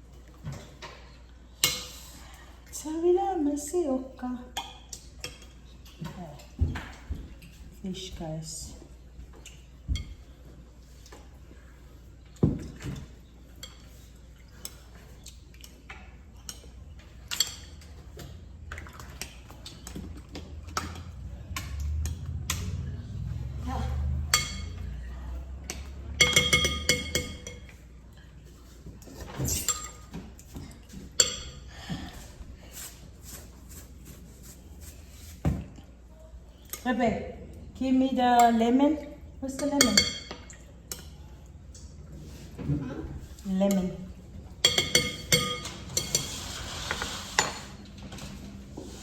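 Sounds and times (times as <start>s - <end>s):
dishes and pots clinking: 15.7s - 28.2s, 28.8s - 32.2s, 39.5s - 41.2s, 43.7s - 49.0s.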